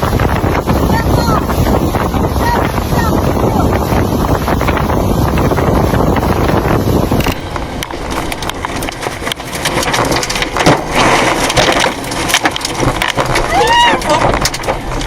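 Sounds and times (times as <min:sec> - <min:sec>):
steady rushing noise: 0:00.0 - 0:15.0
wind buffeting microphone: 0:00.0 - 0:15.0
clatter of sharp cracks: 0:07.2 - 0:15.0.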